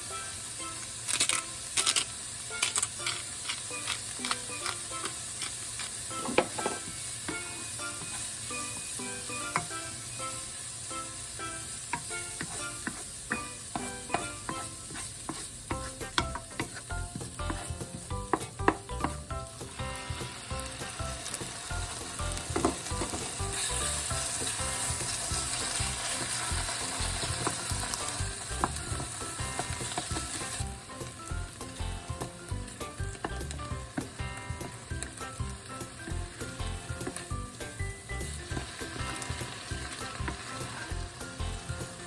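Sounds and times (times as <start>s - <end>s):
sizzling hiss: 0.0s - 42.0s
soft music with plucked notes: 15.7s - 42.0s.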